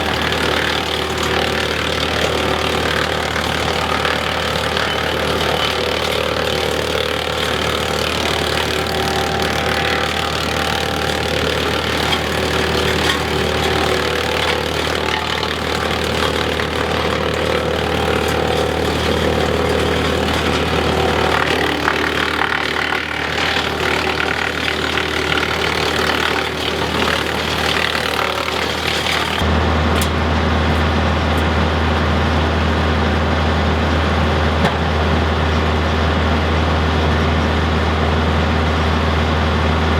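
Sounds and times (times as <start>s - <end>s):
wood chipper hiss: 0.0s - 31.8s
tractor diesel engine running: 0.0s - 39.9s.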